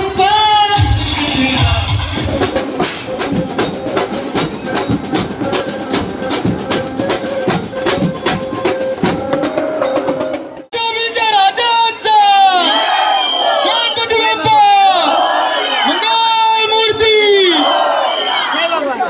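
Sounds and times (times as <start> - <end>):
procession drums beating: 0.7 - 10.7.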